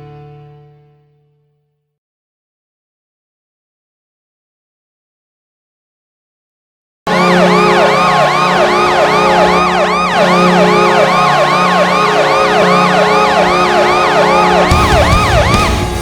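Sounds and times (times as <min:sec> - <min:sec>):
yelping siren: 0:07.1 - 0:15.9
pulsing low goal horn: 0:07.1 - 0:16.0.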